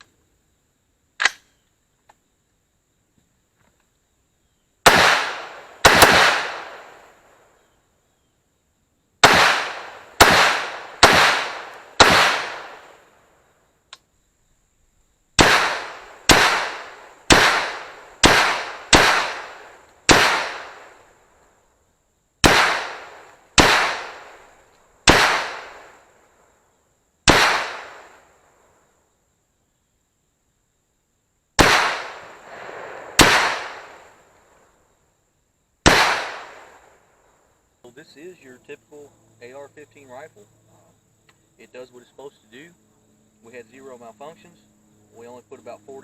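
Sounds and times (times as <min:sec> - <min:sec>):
rifle gunshots echoing: 0:04.8 - 0:07.1, 0:09.2 - 0:13.0, 0:15.4 - 0:21.1, 0:22.4 - 0:26.0, 0:27.3 - 0:28.2, 0:31.6 - 0:34.2, 0:35.8 - 0:36.9.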